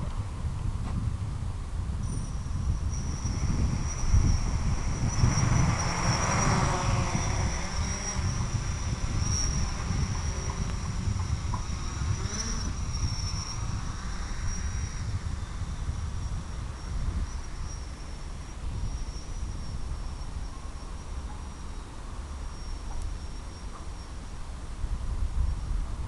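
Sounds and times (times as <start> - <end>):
wind rumbling on microphone: 0.0 - 26.0
electric motor whining: 3.4 - 12.9.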